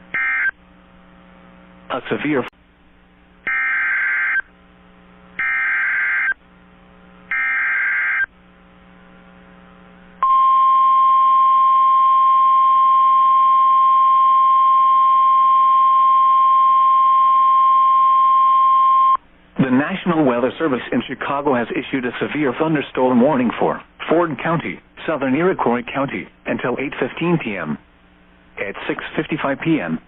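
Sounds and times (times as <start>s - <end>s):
steady single-pitch alert tone: 7.3s - 8.3s, 10.2s - 19.2s.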